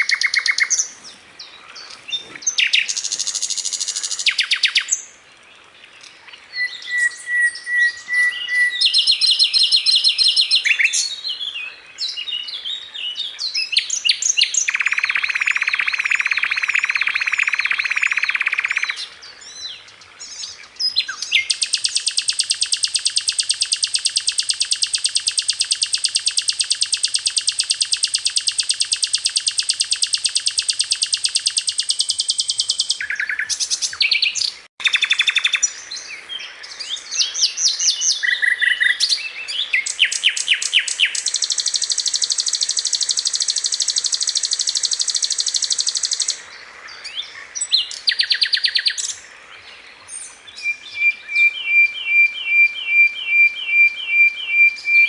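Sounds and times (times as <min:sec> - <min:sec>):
songbird chirps and trills: 0:00.0 - 0:55.0.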